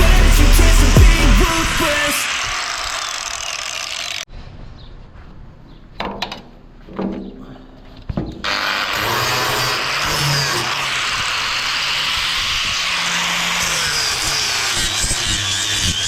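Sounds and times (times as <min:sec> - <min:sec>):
welding arc crackling and hissing: 0:00.0 - 0:04.2.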